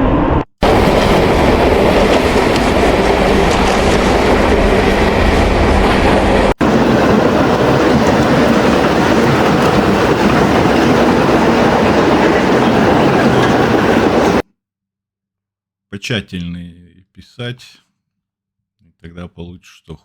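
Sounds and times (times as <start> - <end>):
train clickety-clack on rails: 0.6 - 14.4.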